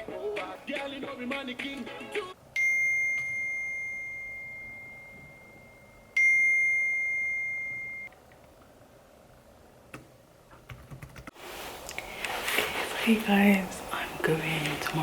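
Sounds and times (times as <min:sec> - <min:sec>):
high bell-like chime: 0:02.6 - 0:08.1.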